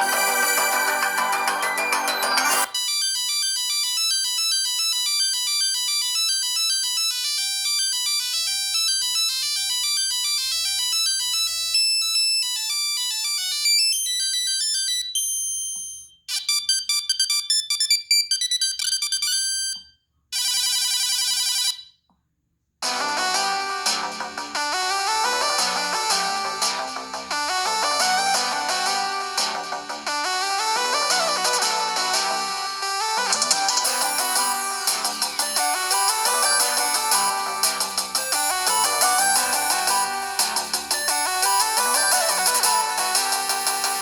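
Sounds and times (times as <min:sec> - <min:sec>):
chiming ringtone melody: 0:00.0 - 0:03.7, 0:30.1 - 0:44.0.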